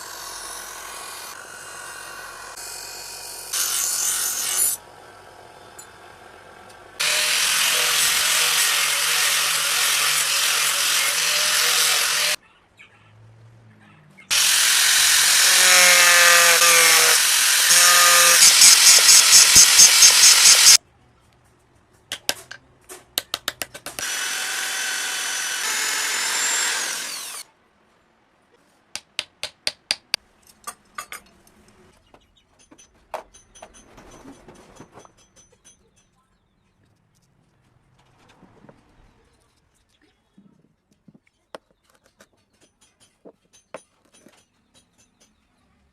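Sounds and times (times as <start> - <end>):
power grinder grinding steel: 7.0 - 12.4, 14.3 - 20.8, 24.0 - 27.4.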